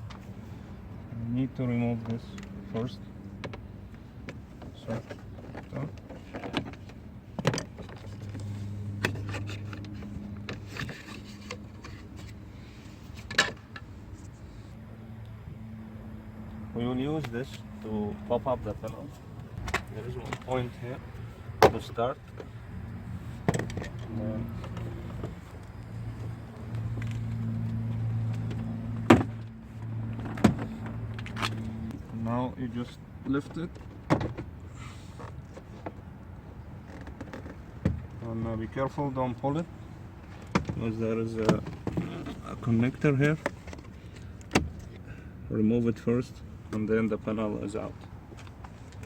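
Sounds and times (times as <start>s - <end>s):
tools clicking and scraping: 5.0s - 12.4s.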